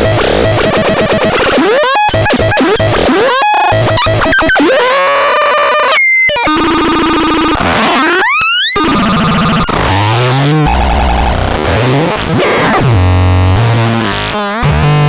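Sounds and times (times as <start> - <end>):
harsh synthesizer tones: 0.0 - 15.0.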